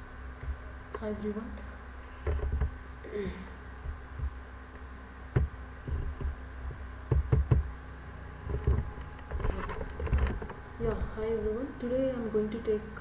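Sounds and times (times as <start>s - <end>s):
low electrical hum: 0.0s - 13.0s
dull knocks and taps: 2.2s - 2.8s, 3.8s - 4.4s, 5.3s - 7.7s.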